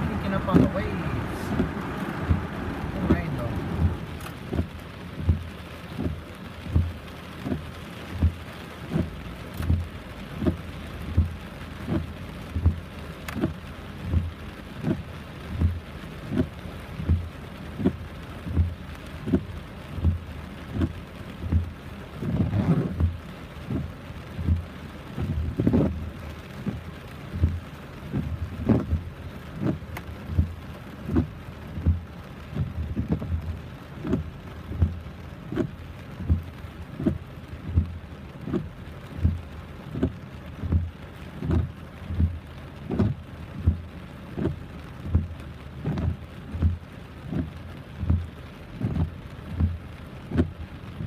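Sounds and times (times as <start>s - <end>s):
steady low thump: 0.0s - 6.9s
rain: 0.0s - 51.0s.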